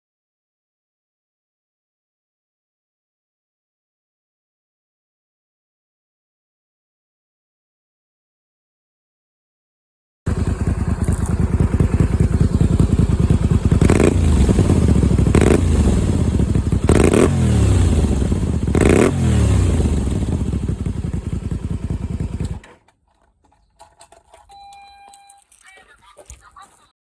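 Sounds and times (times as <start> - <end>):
motorcycle engine idling and revving: 10.3 - 22.9.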